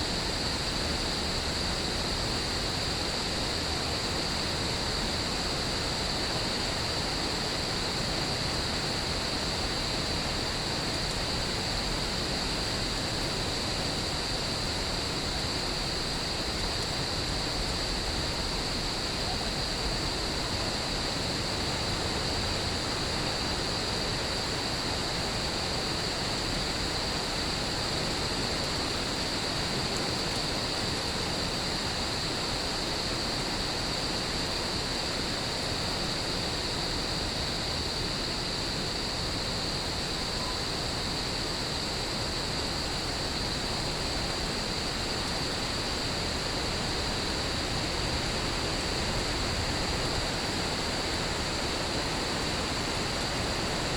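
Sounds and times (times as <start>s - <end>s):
crickets chirping: 0.0s - 53.9s
steady rain hiss: 0.0s - 53.9s.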